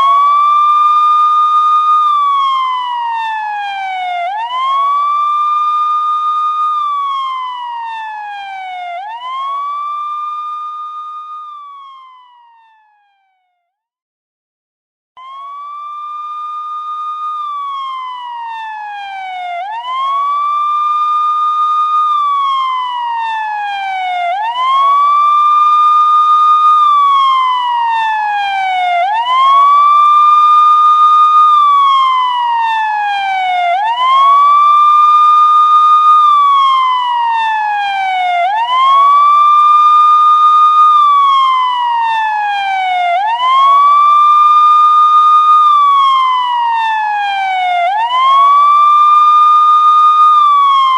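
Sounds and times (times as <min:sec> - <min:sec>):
police siren wailing: 0:00.0 - 0:13.4, 0:15.2 - 0:50.9.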